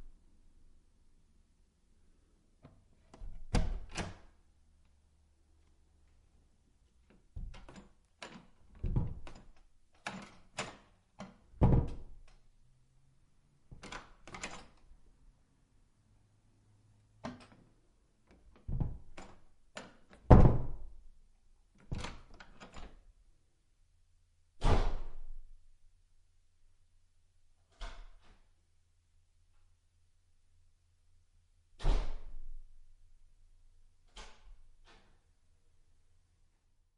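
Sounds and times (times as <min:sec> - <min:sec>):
wooden doors clicking and thudding: 0:02.7 - 0:04.4, 0:07.0 - 0:12.6, 0:13.7 - 0:14.9, 0:17.2 - 0:21.1, 0:21.8 - 0:23.0
door slamming: 0:03.2 - 0:04.2, 0:11.6 - 0:12.2, 0:24.6 - 0:25.1, 0:31.8 - 0:32.4.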